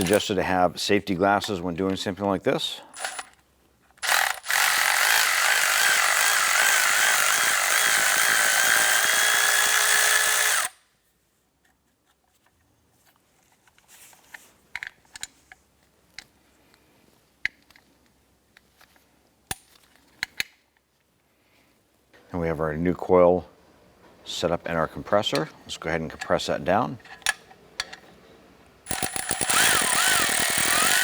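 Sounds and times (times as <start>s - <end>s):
power tool whining: 3.0s - 3.2s, 4.0s - 10.8s, 28.9s - 31.0s.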